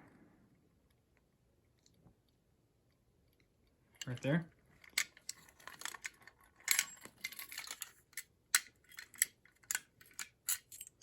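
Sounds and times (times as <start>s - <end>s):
metal handling clicks and rattles: 4.8s - 11.0s.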